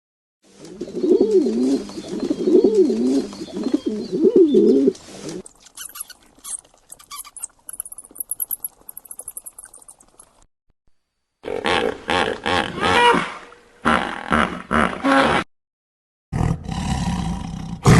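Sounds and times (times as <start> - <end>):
pigeon cooing: 0.7 - 6.0
small bird chirping high: 5.6 - 10.3.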